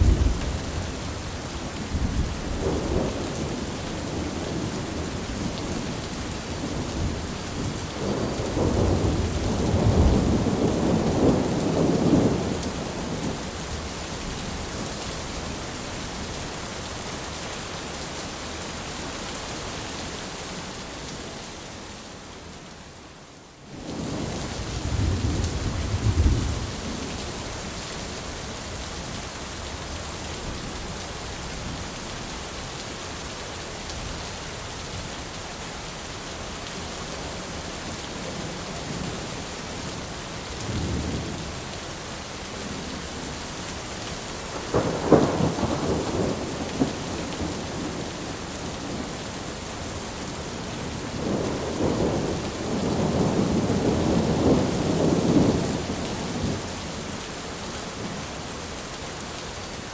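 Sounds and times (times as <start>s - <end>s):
thunder rumbling: 0.0s - 6.0s, 6.6s - 13.8s, 23.9s - 27.2s, 44.5s - 49.2s, 50.6s - 56.6s
steady rain: 0.0s - 59.9s.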